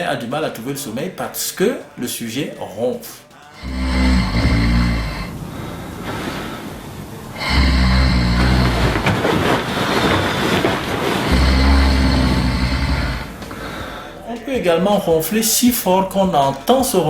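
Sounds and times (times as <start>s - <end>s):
quiet breathing: 3.1s - 14.5s
person snoring loudly: 3.5s - 14.3s.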